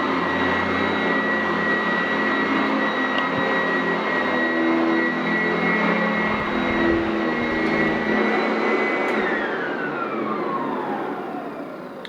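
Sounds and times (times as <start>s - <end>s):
vacuum cleaner whining: 0.0s - 12.0s.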